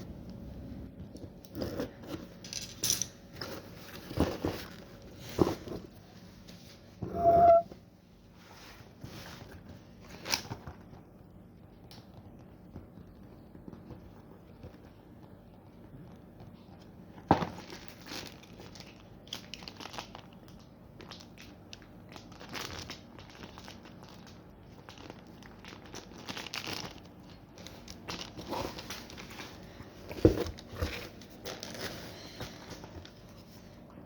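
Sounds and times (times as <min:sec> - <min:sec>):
packaging crinkling and rustling: 0:01.2 - 0:06.0, 0:08.8 - 0:11.2, 0:13.6 - 0:33.9
short squeak: 0:07.0 - 0:07.7.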